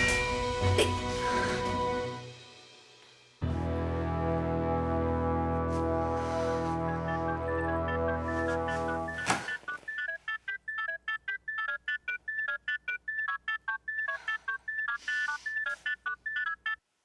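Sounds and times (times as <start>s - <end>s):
phone ringtone beeping melody: 6.9s - 16.8s.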